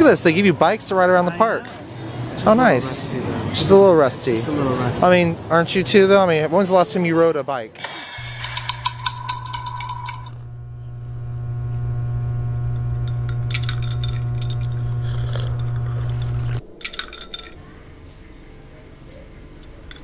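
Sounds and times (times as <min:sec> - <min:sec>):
low droning tone: 0:08.2 - 0:18.8.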